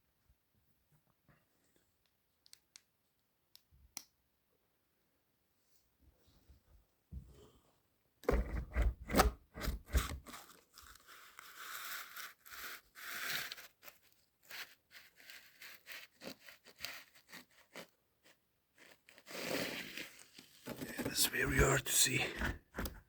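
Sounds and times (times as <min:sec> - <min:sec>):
rustling and scraping: 0:08.3 - 0:21.4.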